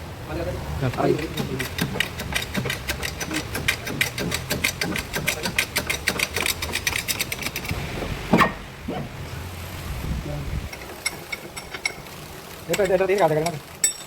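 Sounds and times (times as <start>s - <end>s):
rapid mechanical clicking: 0.8s - 8.0s, 10.7s - 14.0s.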